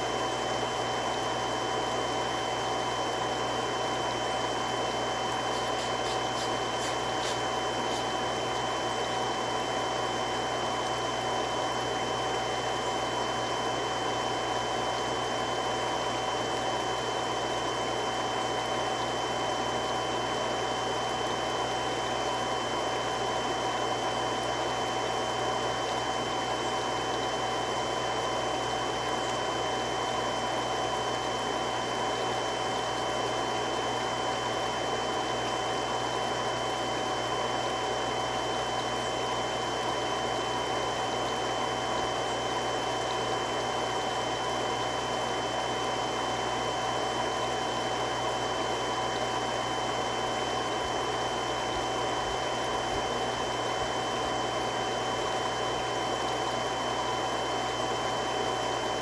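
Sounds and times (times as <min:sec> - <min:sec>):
water pump running: 0:00.0 - 0:59.0.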